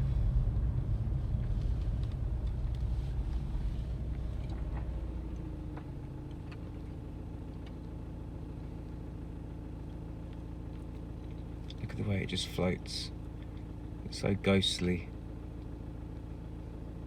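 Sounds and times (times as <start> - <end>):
car engine and road rumble: 0.0 - 17.0.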